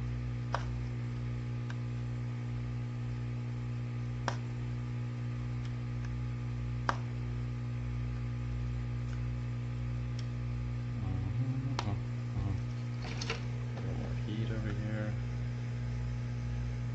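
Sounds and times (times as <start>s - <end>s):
low electrical hum: 0.0s - 16.9s.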